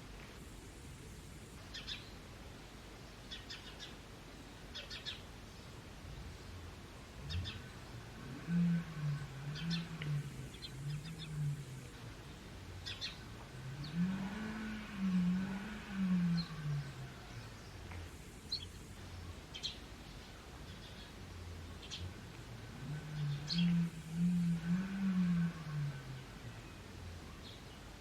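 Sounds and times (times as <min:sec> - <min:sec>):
small birds chirping: 0:01.6 - 0:02.2, 0:03.0 - 0:28.0
low wavering sound: 0:07.0 - 0:19.4, 0:21.4 - 0:27.6.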